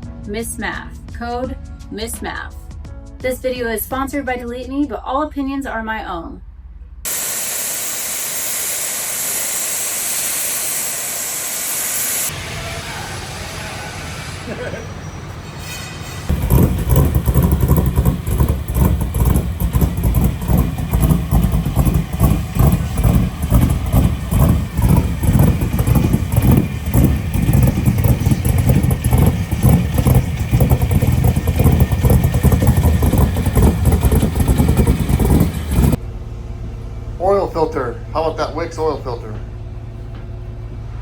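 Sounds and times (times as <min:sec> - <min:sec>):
race car engine idling: 0:16.3 - 0:41.0.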